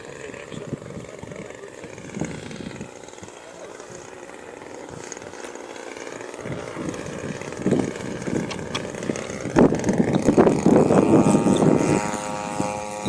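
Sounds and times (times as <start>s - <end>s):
model aeroplane engine and propeller: 0.0s - 13.0s.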